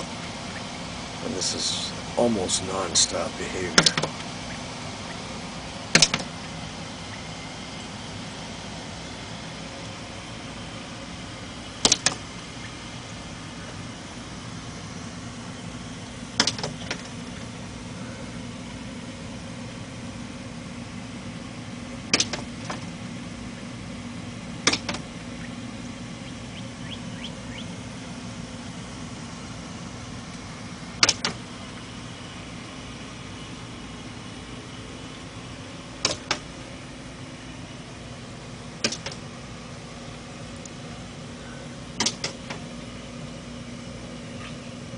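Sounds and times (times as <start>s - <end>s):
steady low hum: 0.0s - 44.9s
bird tapping on window glass: 16.4s - 17.1s, 22.1s - 22.8s.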